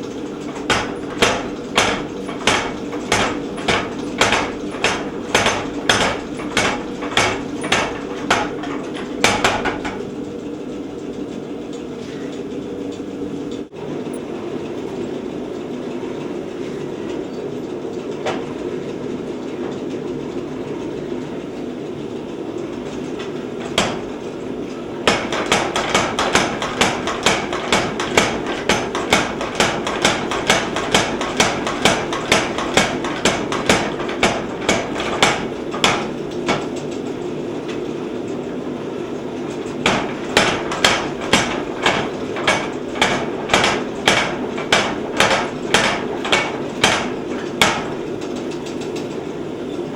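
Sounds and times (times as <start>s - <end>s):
steady mechanical hum: 0.0s - 49.9s
trip hammer pounding steel: 0.2s - 10.1s, 23.6s - 24.2s, 25.0s - 36.8s, 39.7s - 48.3s.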